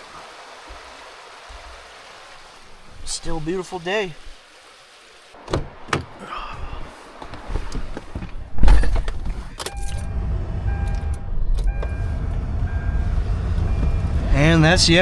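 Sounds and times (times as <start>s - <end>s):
car engine starting and idling: 5.4s - 15.0s
keys jangling: 8.7s - 10.1s.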